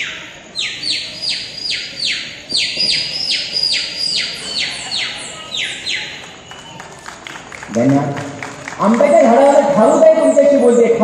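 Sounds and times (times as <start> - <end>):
imitated chick peeping: 0.0 - 6.4.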